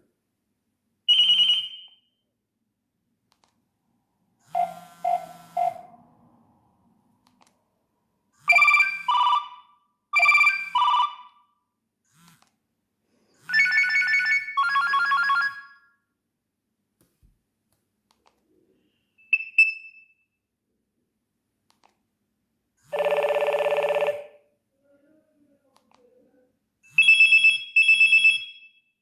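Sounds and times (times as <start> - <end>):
mobile phone ringtone: 1.1 - 2.0, 4.5 - 6.0, 8.4 - 11.4, 13.4 - 16.0, 22.9 - 24.4, 26.9 - 29.0.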